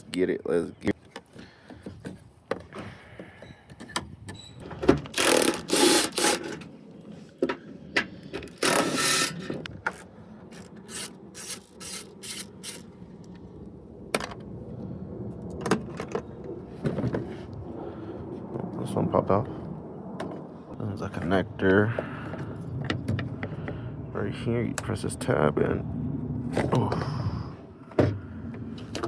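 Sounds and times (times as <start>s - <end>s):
rattling scraping bursts: 4.6s - 6.8s, 7.6s - 12.9s.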